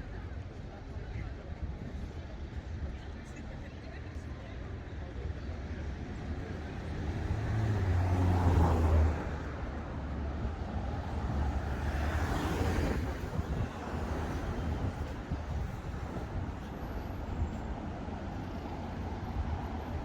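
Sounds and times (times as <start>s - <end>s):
cars passing: 6.1s - 20.0s.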